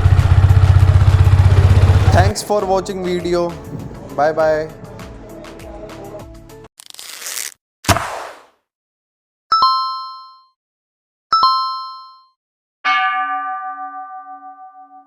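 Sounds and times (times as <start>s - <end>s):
bell-like chime with low tone: 11.4s - 15.0s.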